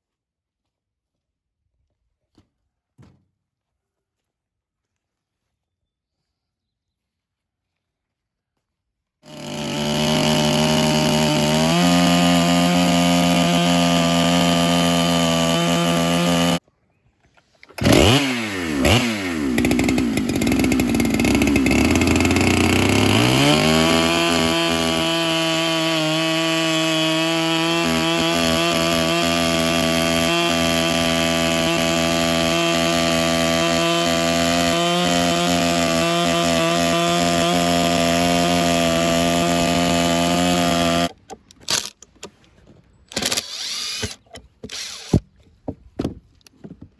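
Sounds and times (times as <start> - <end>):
electric chainsaw cutting log: 9.2 - 16.6, 17.7 - 42.0, 43.1 - 45.2.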